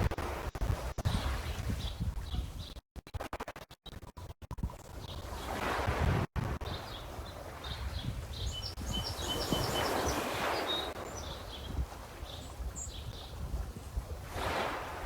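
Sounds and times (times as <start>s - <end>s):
lake waves washing: 0.0s - 2.2s, 5.1s - 15.0s
wind buffeting microphone: 0.0s - 2.8s, 4.6s - 15.0s
small birds chirping: 6.6s - 13.9s.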